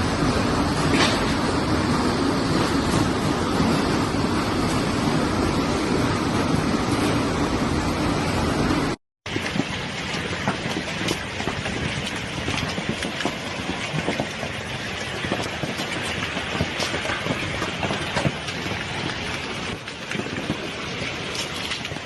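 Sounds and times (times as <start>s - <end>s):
heavy hail clattering on surfaces: 9.3s - 22.0s.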